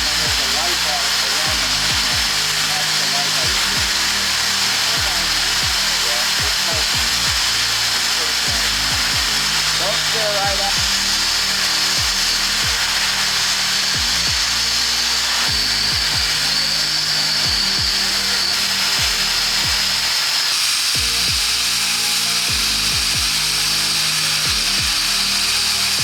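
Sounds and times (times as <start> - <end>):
machine whir with hiss: 0.0 - 26.0.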